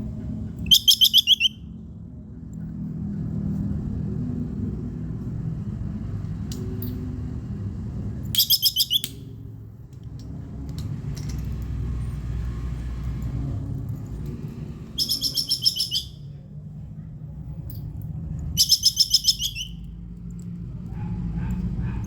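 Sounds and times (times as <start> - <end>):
steady low rumble: 0.0 - 0.7
squirrel chattering alarm call: 0.7 - 1.6, 8.4 - 9.1, 15.0 - 16.2, 18.5 - 19.8.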